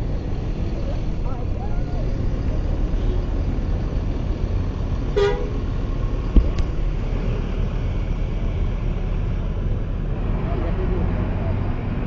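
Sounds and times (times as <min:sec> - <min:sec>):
engine and traffic rumble: 0:00.0 - 0:12.0
bus horn toot: 0:05.2 - 0:05.6
dull thump: 0:06.3 - 0:06.8.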